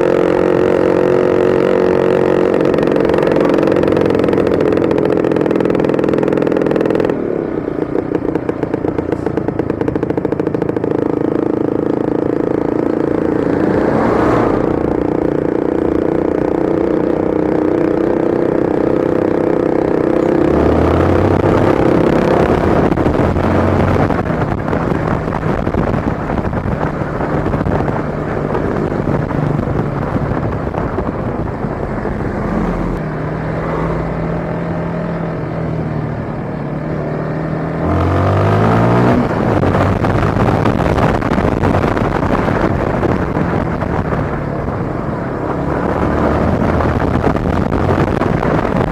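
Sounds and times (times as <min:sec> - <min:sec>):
motorcycle engine running: 0:00.0 - 0:48.9.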